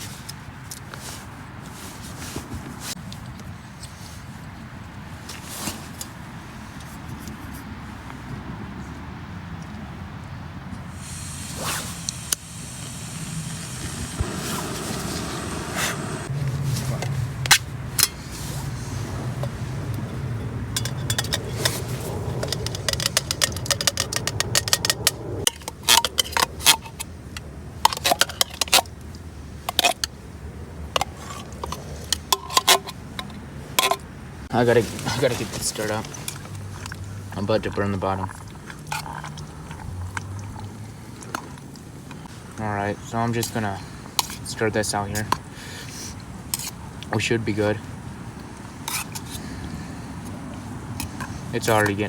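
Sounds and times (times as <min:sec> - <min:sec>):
gas stove hissing: 0:10.9 - 0:16.3.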